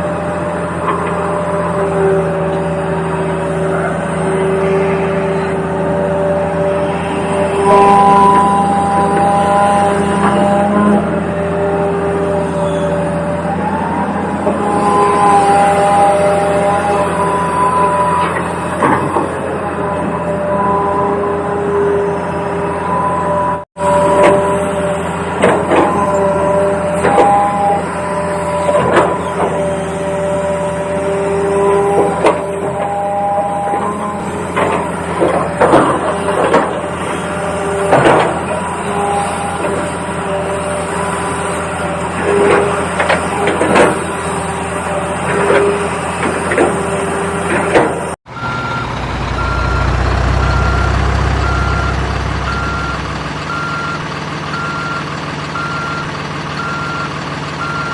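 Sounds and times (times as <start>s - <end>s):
toy reversing beep: 48.3s - 57.9s.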